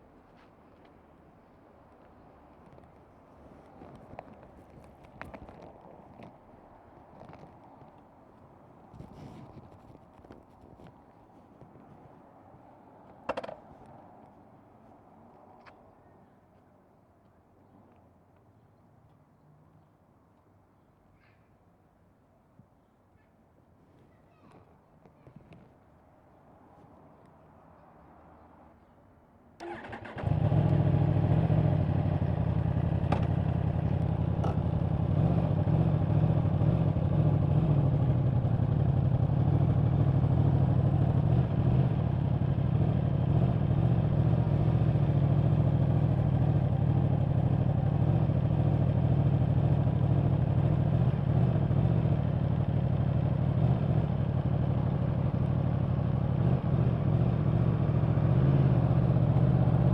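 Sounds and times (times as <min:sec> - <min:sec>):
motorcycle engine starting and idling: 0:29.6 - 0:59.9.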